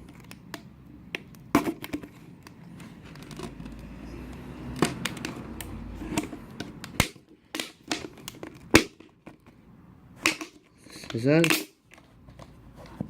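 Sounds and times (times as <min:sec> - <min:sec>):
plastic bottle crackling and snapping: 0:04.3 - 0:09.6.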